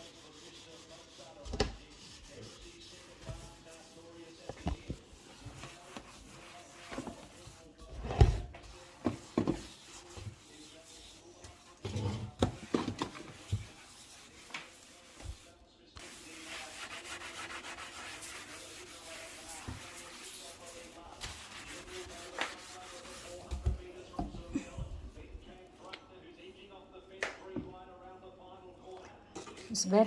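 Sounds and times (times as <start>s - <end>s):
sink being scrubbed: 0.0s - 24.0s.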